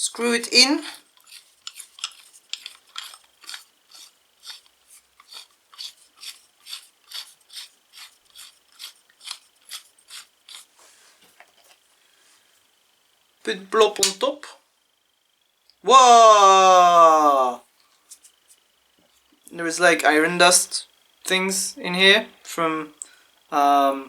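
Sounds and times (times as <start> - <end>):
threaded rod scraping clicks: 0.9 - 10.7.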